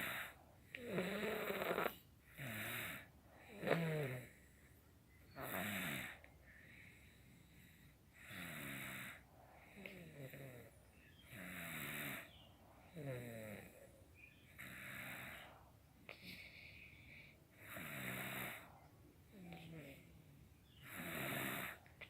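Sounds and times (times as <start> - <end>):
person snoring: 0.0 - 4.4, 20.8 - 21.8.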